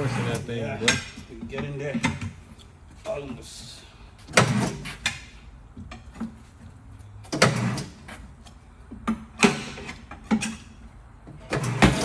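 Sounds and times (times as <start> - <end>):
tire changer knocking and clanking: 7.2 - 12.0.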